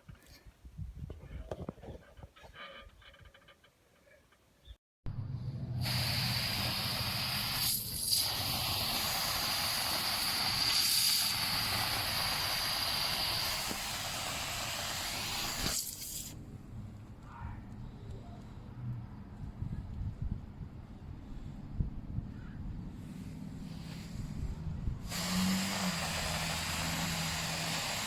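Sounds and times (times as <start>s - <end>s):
pressure washer hum: 5.8s - 16.4s, 25.1s - 28.0s
pressure washer water jet hissing: 5.8s - 16.4s, 25.1s - 28.0s.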